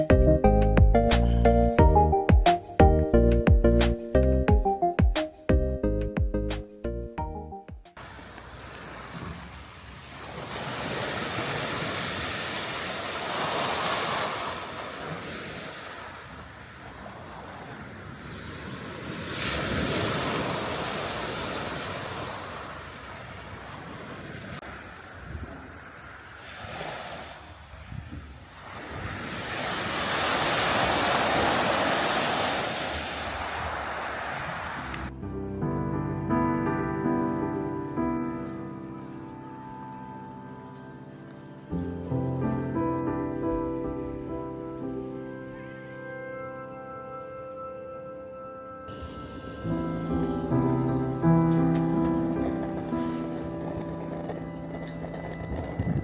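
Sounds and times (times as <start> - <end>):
waves breaking on shore: 8.0 - 35.1, 48.9 - 56.0
wind buffeting microphone: 23.5 - 35.1, 50.5 - 56.0.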